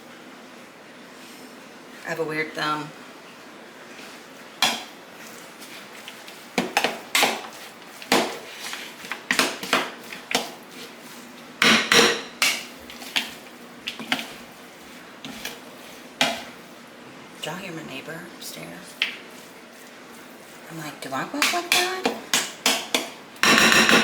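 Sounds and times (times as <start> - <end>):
utensil scraping a mixing bowl: 5.3 - 16.6.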